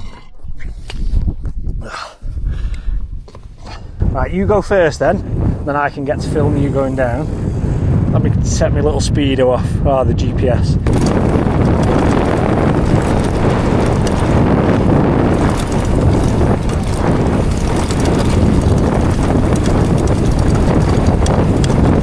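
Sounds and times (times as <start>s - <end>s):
wind rushing over microphone: 0.0s - 22.0s
bike rattling: 3.3s - 22.0s
tyres rumbling on rocky ground: 10.1s - 22.0s.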